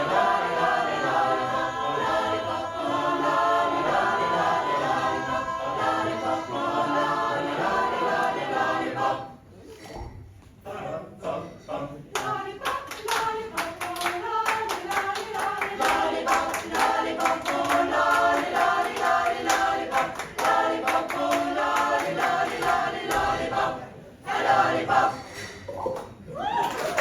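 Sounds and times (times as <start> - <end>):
vocal group singing a cappella: 0.0 - 26.2
hand claps: 12.2 - 23.4.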